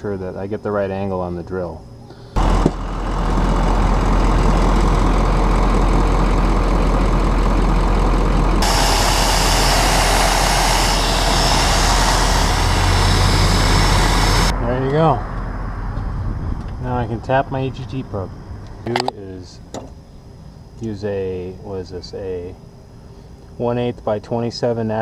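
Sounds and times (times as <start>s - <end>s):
power drill boring into metal: 8.6s - 14.5s.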